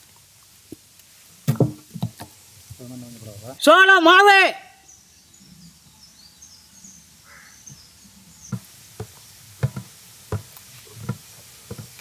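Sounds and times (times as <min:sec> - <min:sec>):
sharp knocks: 0:01.5 - 0:02.3
distant bird calls: 0:04.6 - 0:12.0.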